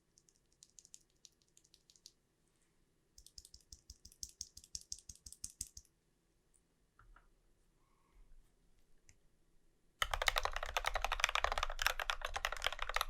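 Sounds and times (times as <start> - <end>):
mechanical keyboard typing: 3.2 - 5.9, 10.0 - 13.0.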